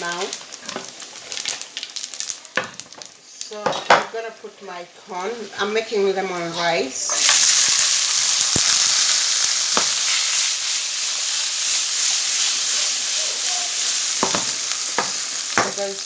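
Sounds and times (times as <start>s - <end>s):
food sizzling in hot oil: 0.0s - 16.0s
utensil tapping pan: 13.5s - 16.0s.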